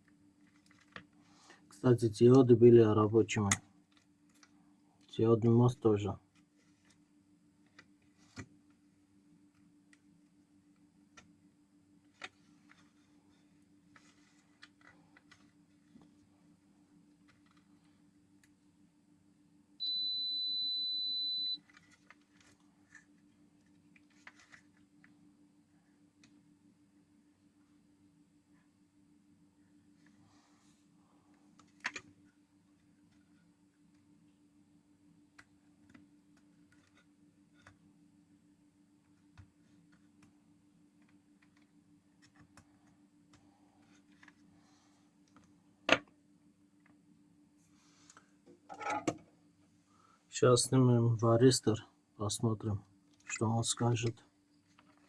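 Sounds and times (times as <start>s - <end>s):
faint steady hum: 0.0s - 55.0s
multimeter high beep: 19.8s - 21.6s.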